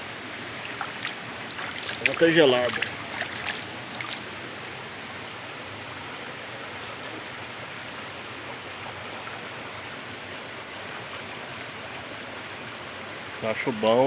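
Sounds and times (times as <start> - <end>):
water rushing over rocks: 0.0 - 4.9.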